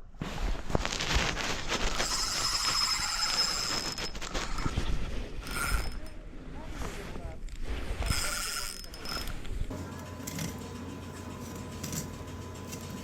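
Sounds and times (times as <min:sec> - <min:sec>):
fishing reel drag clicking: 0:05.4 - 0:06.1, 0:08.0 - 0:09.6.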